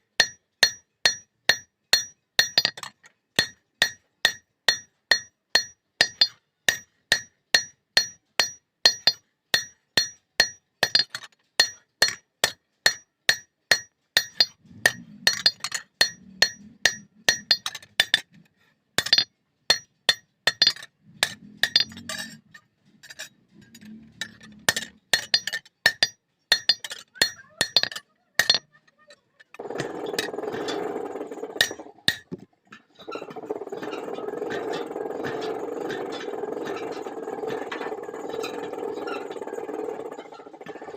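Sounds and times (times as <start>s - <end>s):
steady noise: 29.6s - 32.1s.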